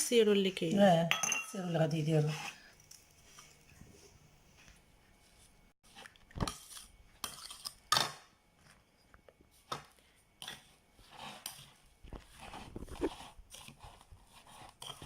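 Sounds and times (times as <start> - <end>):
metal spoon clinking in a bowl: 1.0 - 1.8.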